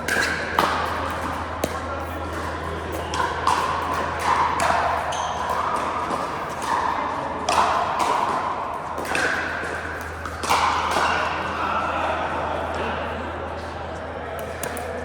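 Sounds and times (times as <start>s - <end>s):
paddles hitting ball: 0.0s - 11.5s.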